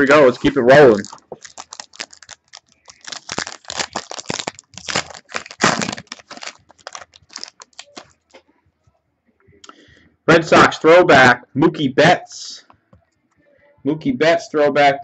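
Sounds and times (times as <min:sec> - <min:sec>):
wrapper tearing and crinkling: 0:00.8 - 0:08.2.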